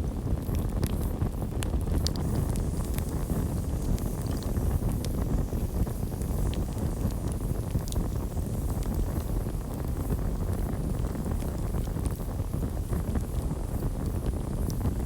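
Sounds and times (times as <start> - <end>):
campfire flame rumble: 0.0 - 15.0
fire crackles and pops: 0.0 - 15.0.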